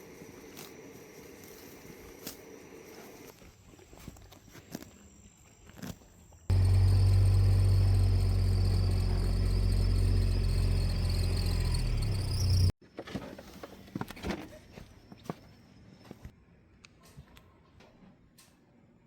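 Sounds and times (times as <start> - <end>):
motor humming: 6.5 - 12.7.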